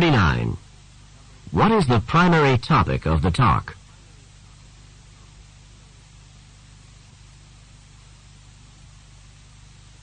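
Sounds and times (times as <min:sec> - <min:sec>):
steady hiss: 0:00.0 - 0:10.0.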